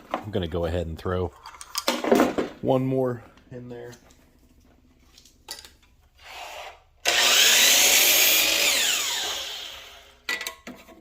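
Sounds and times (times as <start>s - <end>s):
power saw cutting wood: 6.2s - 10.2s.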